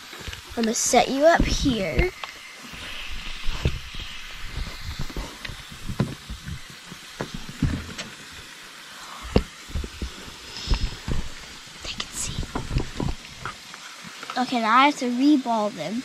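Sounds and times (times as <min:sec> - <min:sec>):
food frying on stove: 0:00.0 - 0:16.0
food being handled and set down: 0:02.7 - 0:08.4.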